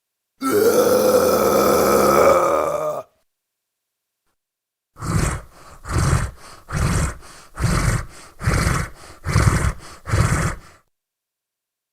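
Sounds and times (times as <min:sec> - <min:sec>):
demon creature growling: 0:00.4 - 0:03.1, 0:05.0 - 0:10.8.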